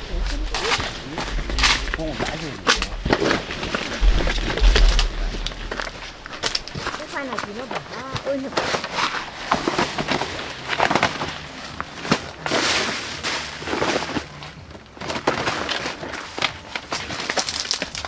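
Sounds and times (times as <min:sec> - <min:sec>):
knocks and snaps: 0:00.0 - 0:11.2
rustling: 0:00.0 - 0:18.0.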